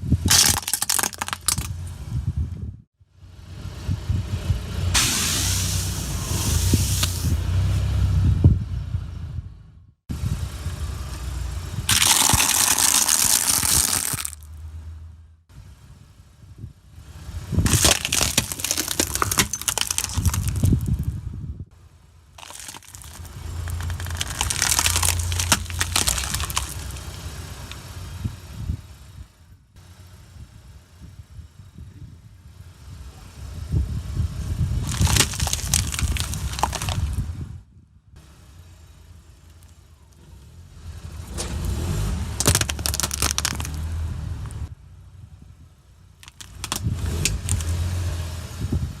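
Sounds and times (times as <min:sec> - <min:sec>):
car engine rumbling: 0:00.0 - 0:49.0
tyre crushing brittle objects: 0:00.2 - 0:01.8, 0:11.9 - 0:14.4, 0:17.6 - 0:21.1, 0:22.4 - 0:27.2, 0:34.8 - 0:37.2, 0:41.6 - 0:44.0, 0:46.2 - 0:47.9.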